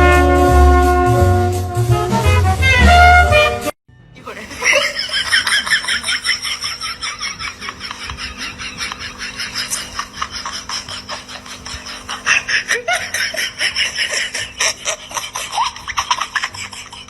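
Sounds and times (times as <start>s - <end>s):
faint steady hum: 4.2s - 17.0s
people laughing hard: 4.2s - 17.0s.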